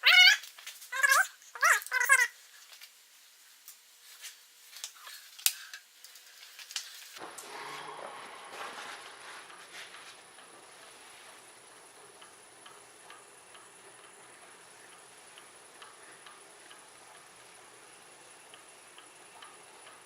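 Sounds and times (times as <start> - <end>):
high-pitched whine: 7.2 - 18.5
faint regular ticking: 10.2 - 20.0.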